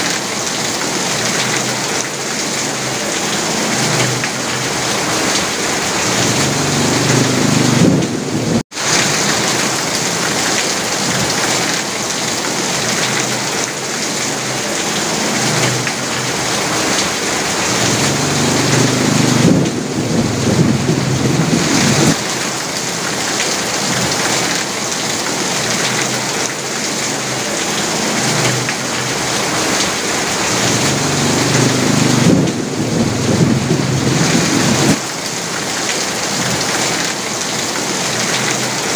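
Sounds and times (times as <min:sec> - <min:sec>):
heavy rain on a roof: 0:00.0 - 0:38.9
low rumbles: 0:06.0 - 0:08.6, 0:17.6 - 0:22.2, 0:30.5 - 0:35.0.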